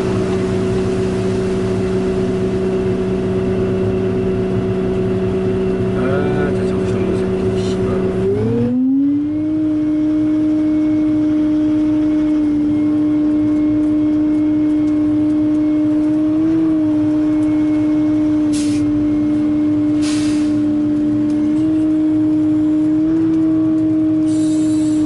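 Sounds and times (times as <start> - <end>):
excavator engine whining: 0.0 - 25.0
short hydraulic hisses: 18.5 - 18.8, 20.0 - 20.6, 24.3 - 25.0.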